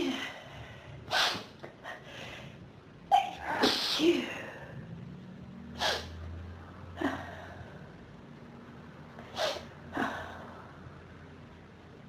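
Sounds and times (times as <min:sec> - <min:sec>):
person sniffing through the nose: 0:01.1 - 0:01.5, 0:05.8 - 0:06.1
person sneezing: 0:01.1 - 0:01.6, 0:05.8 - 0:06.2, 0:09.3 - 0:10.2.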